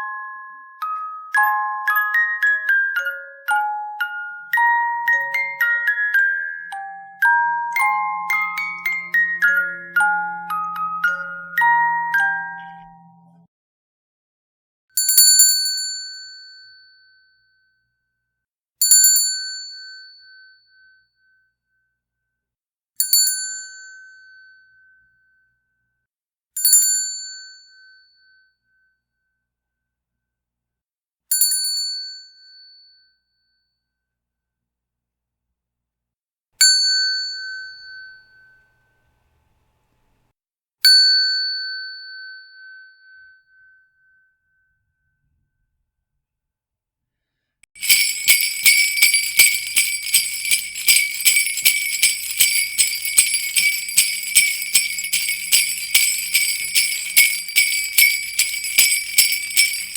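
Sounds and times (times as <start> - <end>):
bell ringing: 47.8 - 59.9.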